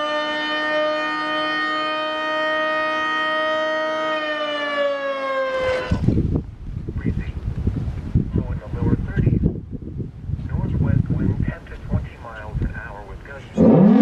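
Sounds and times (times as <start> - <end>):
warning siren chord: 0.0 - 6.0
rumble on microphone: 5.9 - 13.6.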